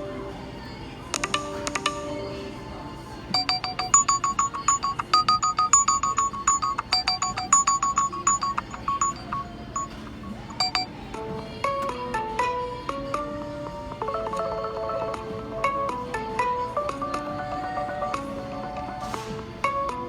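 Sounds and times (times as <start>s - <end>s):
alarm melody: 0.0s - 20.0s
phone alarm tone: 3.3s - 11.1s.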